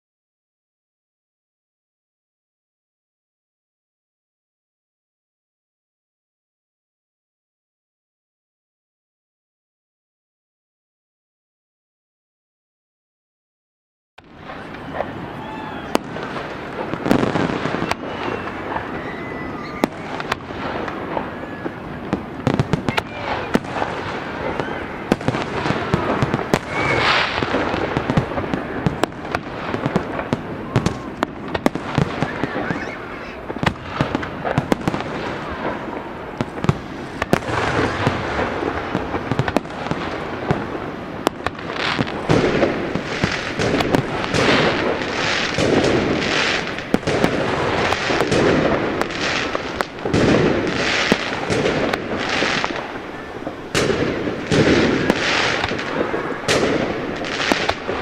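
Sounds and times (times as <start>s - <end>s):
fireworks bangs and crackling: 14.2s - 58.0s.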